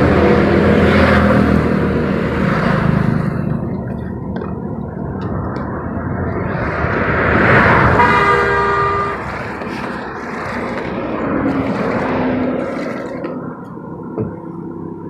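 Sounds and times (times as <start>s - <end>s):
road traffic noise: 0.0s - 15.0s
vehicle passing close by: 0.0s - 15.0s
vehicle horn honking: 7.7s - 9.6s.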